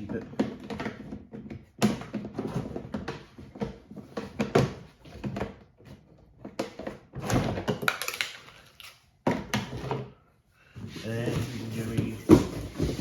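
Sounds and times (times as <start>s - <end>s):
boxes knocking and thudding: 0.0s - 8.5s, 9.2s - 10.2s, 10.8s - 13.0s
rustling scrapes: 10.8s - 13.0s.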